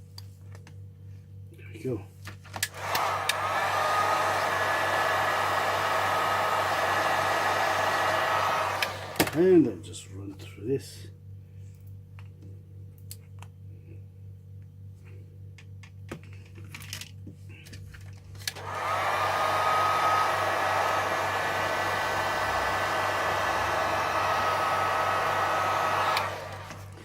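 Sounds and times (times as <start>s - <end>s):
heat gun blowing with high whine: 2.7s - 9.5s, 18.5s - 27.0s.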